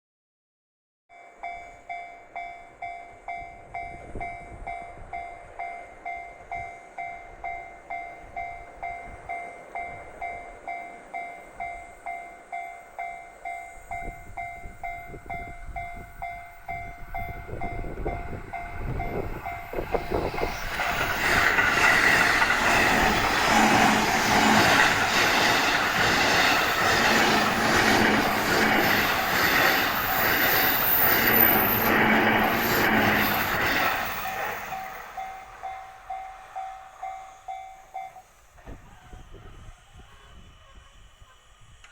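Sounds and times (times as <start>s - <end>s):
level-crossing alarm dinging: 1.1s - 38.6s
electric train passing: 1.1s - 41.9s
rhythmic wheel clatter: 16.6s - 37.2s.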